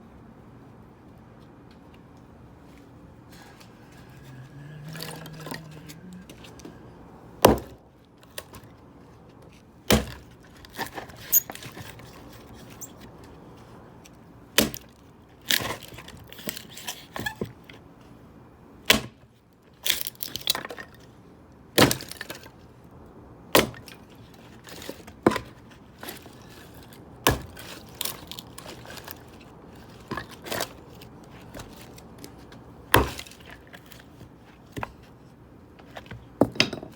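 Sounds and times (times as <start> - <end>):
axe chopping firewood: 7.4 - 7.8, 9.9 - 10.2, 14.6 - 14.8.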